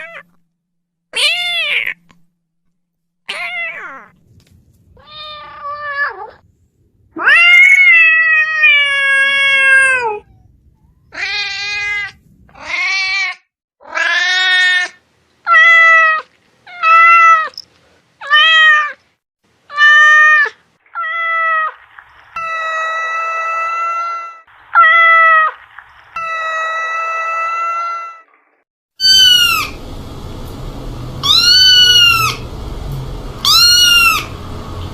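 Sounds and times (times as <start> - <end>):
cat meowing: 1.2 - 2.1, 3.3 - 4.1, 5.0 - 6.4, 7.2 - 10.3, 11.1 - 17.6, 18.2 - 19.0, 19.7 - 21.8, 22.4 - 25.6, 29.0 - 29.8, 31.2 - 32.4, 33.4 - 34.3.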